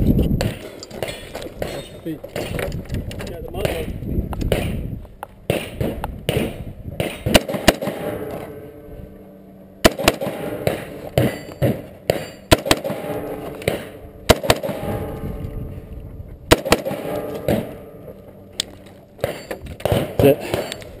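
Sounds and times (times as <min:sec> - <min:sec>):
gunshots: 0:00.4 - 0:02.7, 0:03.6 - 0:08.7, 0:09.8 - 0:15.3, 0:16.5 - 0:17.9, 0:19.2 - 0:21.0.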